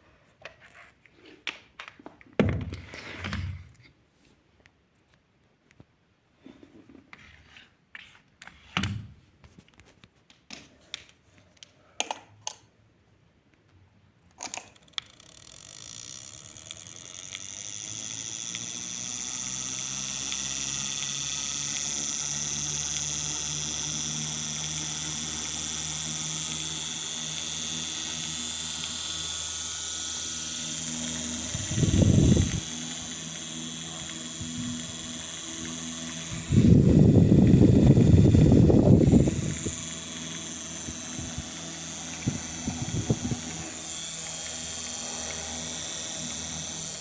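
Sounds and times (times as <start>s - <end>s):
electric fan motor humming: 15.5s - 47.0s.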